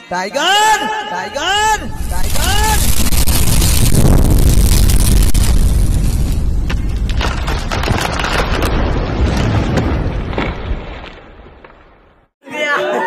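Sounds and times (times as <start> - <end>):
loud deep rumble: 1.4 - 10.4
crackles and knocks: 1.6 - 12.4.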